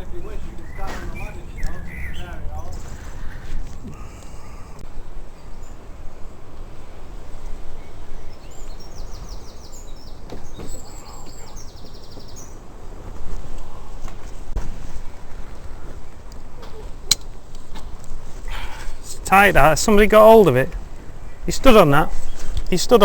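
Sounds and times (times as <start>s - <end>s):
songbird singing high notes: 0.6s - 2.4s.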